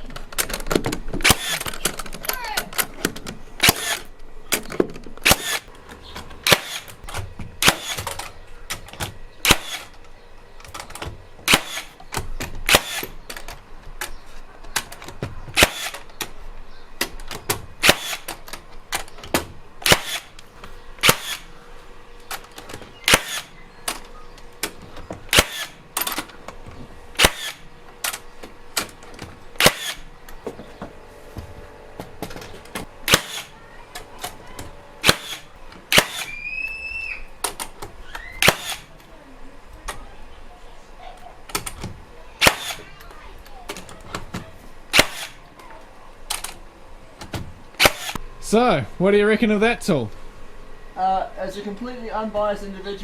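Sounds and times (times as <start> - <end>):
nailer firing sharp cracks: 0.3 - 2.1, 2.8 - 5.7, 6.4 - 10.0, 10.7 - 13.5, 14.8 - 16.1, 17.0 - 20.4, 21.0 - 21.5, 22.3 - 24.0, 24.6 - 26.3, 27.2 - 28.2, 28.8 - 30.1, 32.7 - 33.5, 35.0 - 36.4, 38.4 - 38.9, 42.4 - 42.9, 44.9 - 45.4, 47.3 - 48.2.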